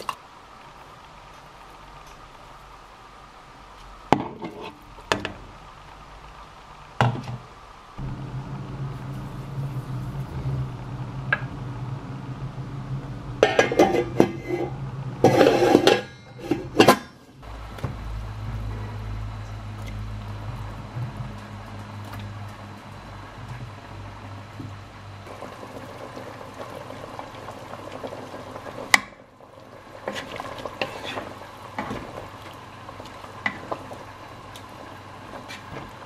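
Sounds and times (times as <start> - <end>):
steady low hum: 7.8 - 27.8
pots and dishes clattering: 13.4 - 17.3.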